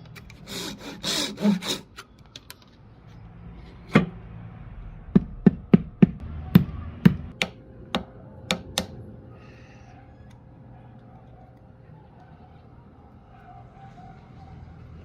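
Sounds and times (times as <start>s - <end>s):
saw or rasp scraping: 0.2s - 2.1s
tool knocking on wood: 5.2s - 8.9s.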